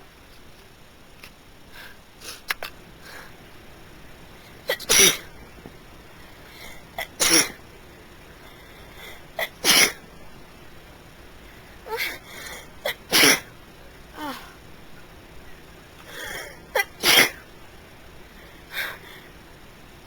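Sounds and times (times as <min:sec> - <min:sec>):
person sneezing: 0:04.7 - 0:05.3, 0:06.6 - 0:07.6, 0:09.4 - 0:10.0, 0:11.9 - 0:13.5, 0:16.1 - 0:17.4.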